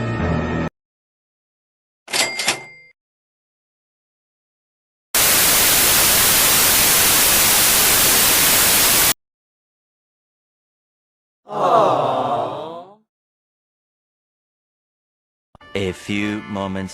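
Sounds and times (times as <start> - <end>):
loud static hiss: 5.2 - 9.2.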